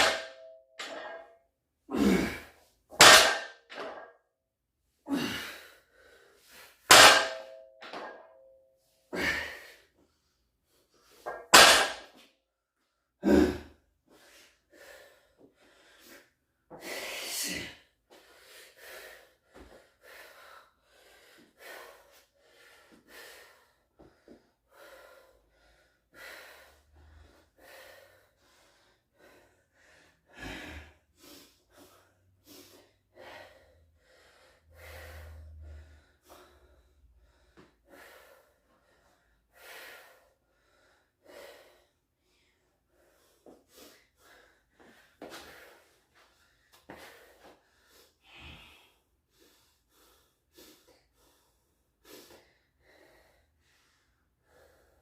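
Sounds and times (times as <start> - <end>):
man breathing hard: 5.0 - 8.3, 9.0 - 55.0.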